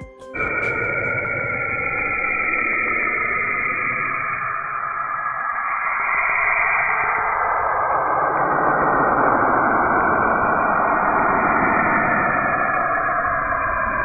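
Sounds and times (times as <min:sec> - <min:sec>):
faint steady tones: 0:00.0 - 0:14.0
eerie rushing noise: 0:00.3 - 0:14.0.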